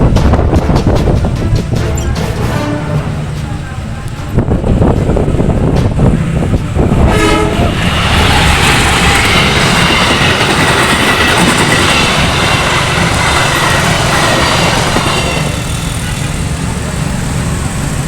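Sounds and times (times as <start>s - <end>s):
train rushing past on rails: 0.0s - 18.0s
train horn blast: 0.5s - 4.4s, 6.8s - 10.4s, 12.0s - 16.2s.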